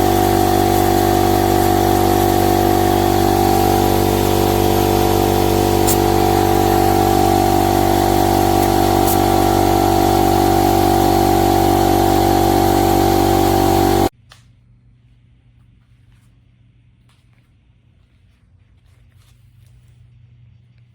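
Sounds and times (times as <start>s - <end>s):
generator engine hum: 0.0s - 14.1s.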